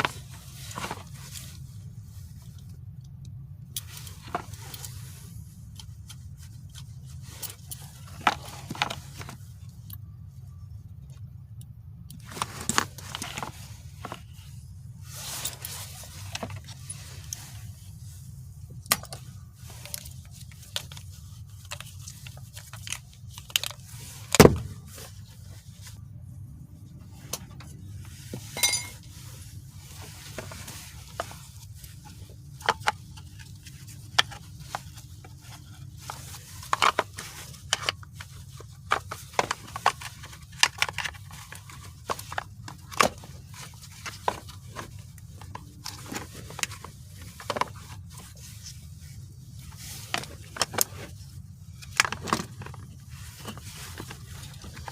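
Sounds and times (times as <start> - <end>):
steady low hum: 0.0 - 54.9
metal parts clicking and scraping: 28.4 - 29.1.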